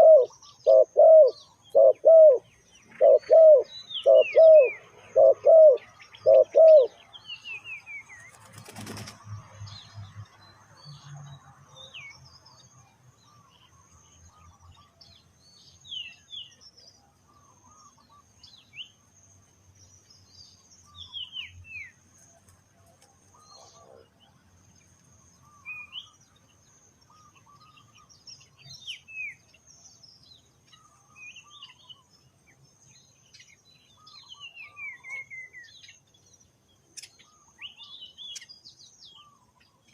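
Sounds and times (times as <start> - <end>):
dove cooing: 0.0 - 7.0
small birds chirping: 0.0 - 39.9
wings fluttering: 8.2 - 9.3.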